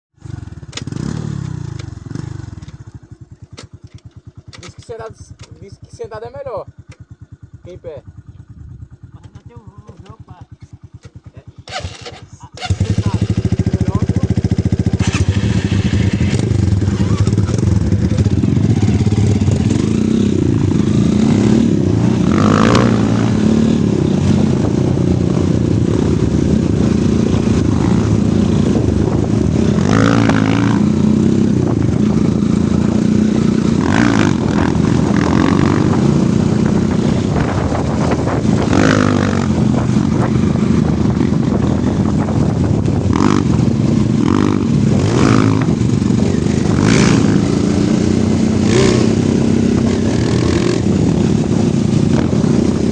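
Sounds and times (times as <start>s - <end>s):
motorcycle engine running: 0.2s - 52.9s
high-pitched rattles or squeaks: 11.6s - 13.4s.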